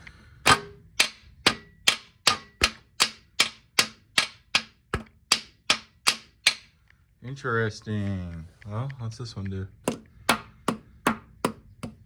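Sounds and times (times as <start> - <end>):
sharp metal-on-metal knocks: 0.4 - 6.7.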